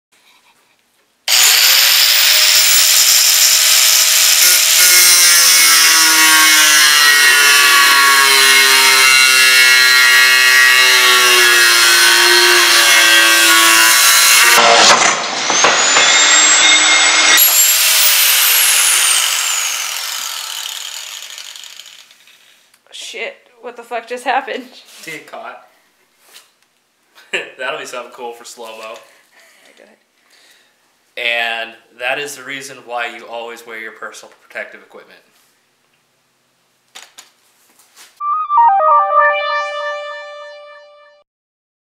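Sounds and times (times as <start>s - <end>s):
angle grinder cutting: 1.3s - 22.4s.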